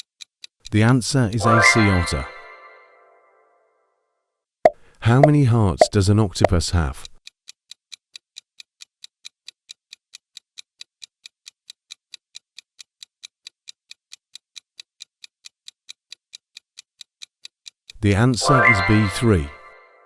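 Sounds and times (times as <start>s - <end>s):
clock ticking: 0.0s - 1.8s, 5.2s - 19.0s.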